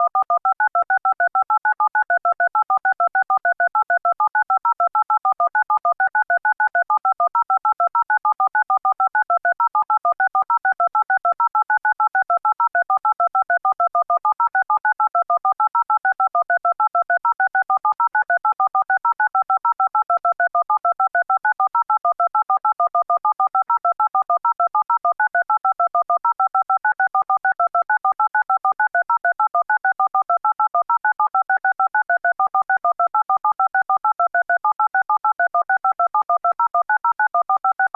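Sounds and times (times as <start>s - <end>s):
telephone keypad tones: 0.0s - 37.9s.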